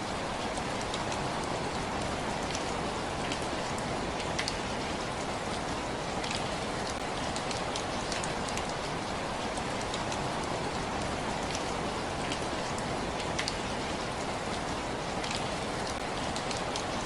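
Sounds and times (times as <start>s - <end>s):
rain patter: 0.0s - 17.0s.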